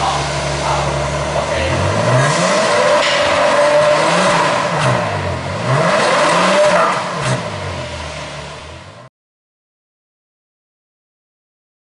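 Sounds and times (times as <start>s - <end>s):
car exhaust revving in blips: 0.0s - 9.1s.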